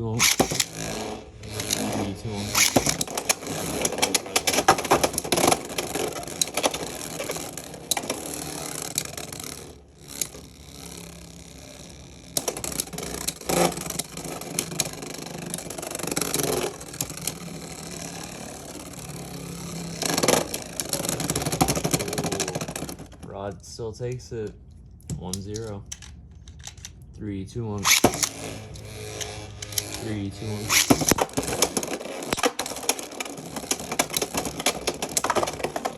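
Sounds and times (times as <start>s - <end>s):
spinning tops scraping and rattling: 0.0s - 23.2s, 27.8s - 35.9s.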